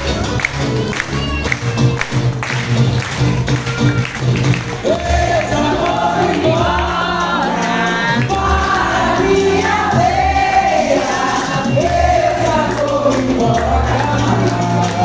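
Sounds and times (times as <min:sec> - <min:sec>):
low instrumental accompaniment: 0:00.0 - 0:15.0
group of voices singing: 0:04.7 - 0:15.0.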